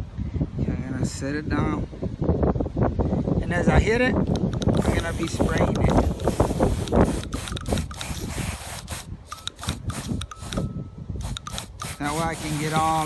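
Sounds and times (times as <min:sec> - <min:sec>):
solenoid clicking: 0:04.3 - 0:08.2, 0:09.2 - 0:12.1.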